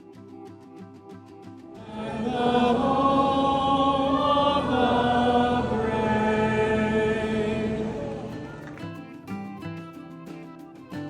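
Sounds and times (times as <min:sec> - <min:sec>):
choir holding sustained chords: 0:01.8 - 0:08.7.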